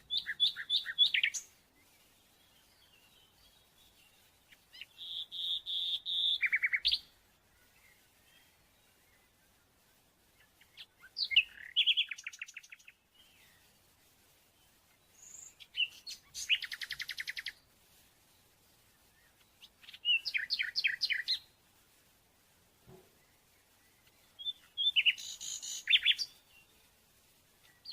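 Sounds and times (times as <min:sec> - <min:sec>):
songbird trilling: 0:00.0 - 0:01.5, 0:04.7 - 0:07.0, 0:10.7 - 0:12.9, 0:15.2 - 0:17.6, 0:19.7 - 0:21.5, 0:24.4 - 0:26.4.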